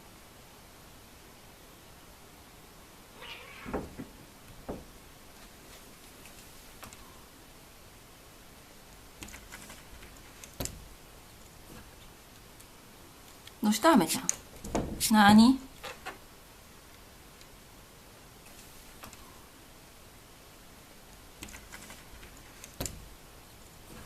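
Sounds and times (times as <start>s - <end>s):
cat meowing: 3.2s - 3.8s
sharp knocks and clicks: 3.7s - 5.0s, 9.2s - 10.8s, 21.4s - 23.1s.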